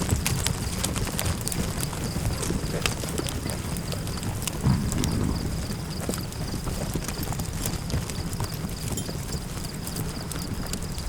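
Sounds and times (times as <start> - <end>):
campfire crackling and popping: 0.0 - 11.0
wind rushing: 4.6 - 6.7.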